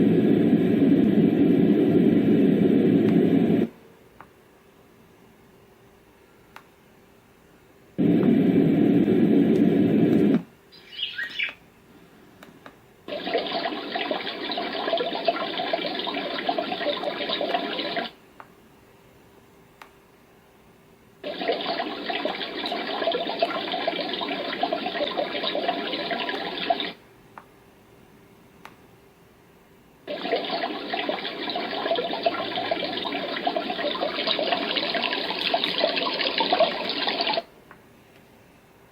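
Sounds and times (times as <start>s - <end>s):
birdsong chirp: 10.7s - 11.6s
running water sound: 13.1s - 18.2s, 21.2s - 27.0s, 30.1s - 37.5s.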